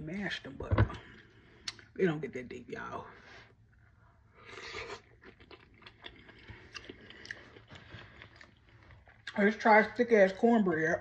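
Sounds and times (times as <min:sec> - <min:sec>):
person chewing food: 0:03.6 - 0:09.4.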